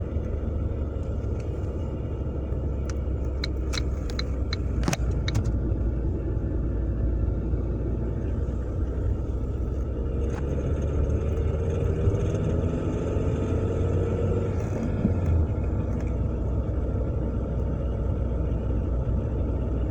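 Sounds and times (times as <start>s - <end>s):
car engine rumbling: 0.0s - 19.9s
rattle under load: 1.0s - 5.6s
turn signal relay clicking: 1.0s - 5.6s.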